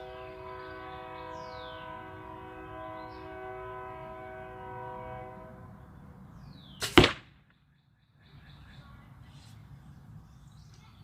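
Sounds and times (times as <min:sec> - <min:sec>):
train horn chord: 0:00.0 - 0:05.8.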